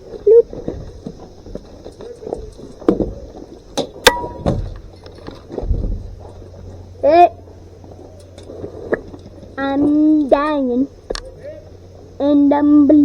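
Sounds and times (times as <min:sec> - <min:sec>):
faint steady hiss: 0:00.0 - 0:13.0
low thump: 0:04.1 - 0:04.8.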